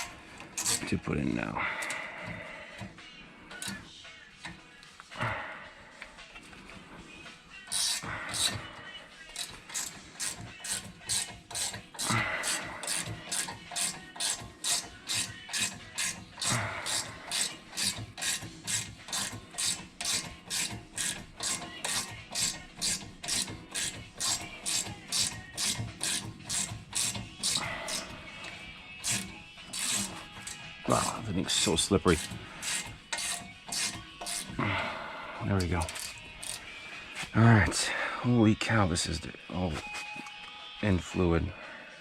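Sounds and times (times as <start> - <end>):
ratchet wrench clicking: 0.0 - 0.9, 3.5 - 3.8, 7.6 - 34.6, 35.6 - 36.7
tool scraping: 0.0 - 2.8, 7.7 - 34.8, 35.4 - 37.4.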